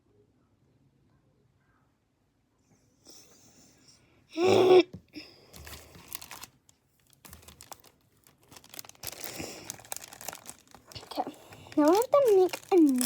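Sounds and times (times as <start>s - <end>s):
paper and tape crinkling: 5.5s - 13.0s.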